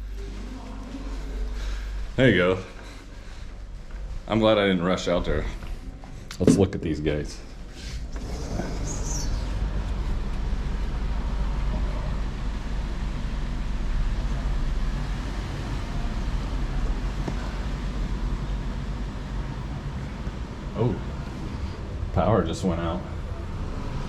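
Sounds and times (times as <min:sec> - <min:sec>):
street traffic rumble: 0:07.5 - 0:24.0.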